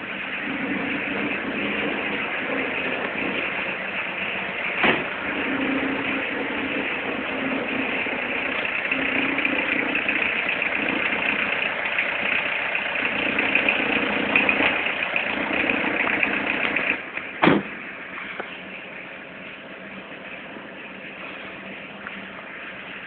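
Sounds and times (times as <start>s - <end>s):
diesel engine idling: 0.0s - 23.0s
sharp knock: 17.4s - 17.7s.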